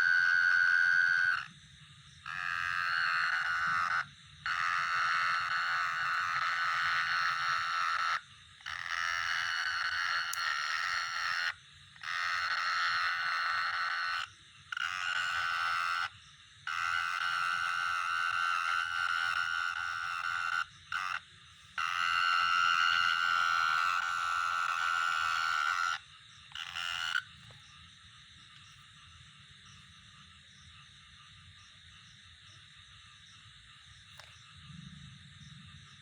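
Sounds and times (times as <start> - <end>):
animal buzzing trills: 0.0 - 1.5, 2.2 - 21.2, 21.8 - 27.4.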